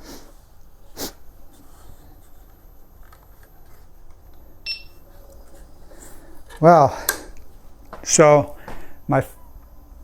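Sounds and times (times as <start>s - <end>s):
short electronic beep: 4.6s - 5.0s.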